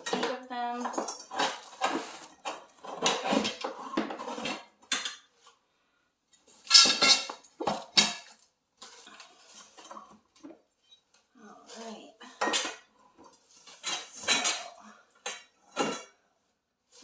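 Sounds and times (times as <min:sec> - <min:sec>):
plastic parts clattering: 0:00.0 - 0:05.1, 0:06.6 - 0:08.3.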